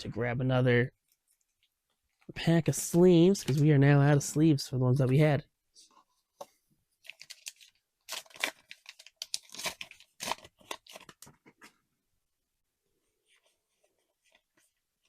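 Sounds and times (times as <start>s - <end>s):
plastic packaging tearing and rustling: 7.0s - 11.4s.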